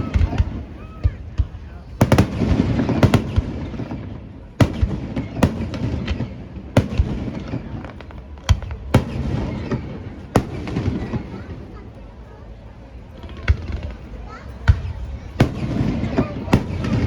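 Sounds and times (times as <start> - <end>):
fireworks booming with echo: 0.0 - 12.2, 13.1 - 17.0.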